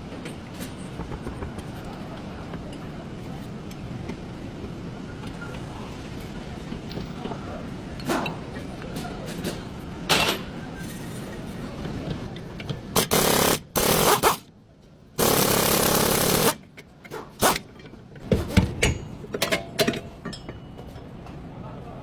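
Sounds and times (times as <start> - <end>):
workshop power tool bursts: 13.0 - 14.4, 15.2 - 16.6.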